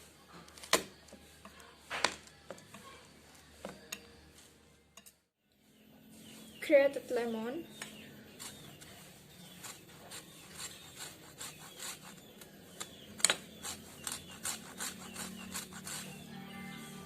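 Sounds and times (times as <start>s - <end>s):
lemon scraping on hand grater: 8.3s - 12.9s, 13.5s - 16.3s.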